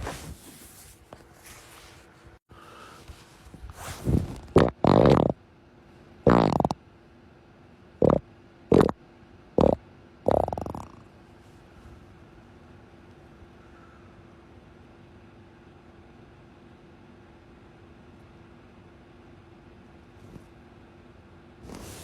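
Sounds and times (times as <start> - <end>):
farts: 4.1 - 5.4, 6.3 - 6.8, 8.0 - 9.0, 9.6 - 11.0.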